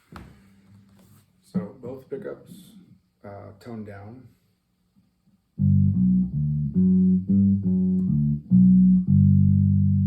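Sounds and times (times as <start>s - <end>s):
electric bass plucked notes: 5.6s - 10.0s.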